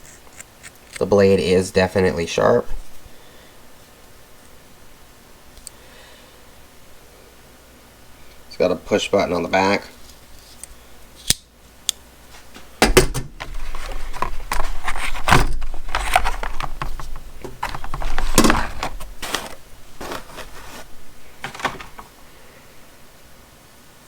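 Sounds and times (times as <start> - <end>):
rustling of hand tools: 12.2 - 22.3
hand tools clattering and scraping: 13.4 - 22.1.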